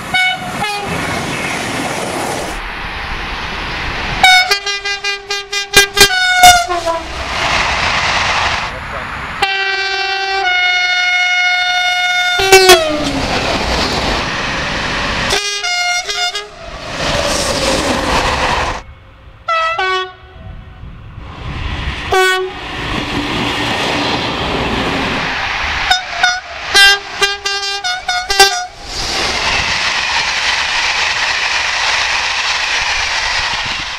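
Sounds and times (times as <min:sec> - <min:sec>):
trains rushing past: 0:00.0 - 0:19.5, 0:20.1 - 0:33.9
train horn blasts: 0:00.1 - 0:01.0, 0:04.2 - 0:07.2, 0:09.4 - 0:13.2, 0:15.3 - 0:16.6, 0:18.9 - 0:20.5, 0:22.1 - 0:22.6, 0:25.9 - 0:28.8.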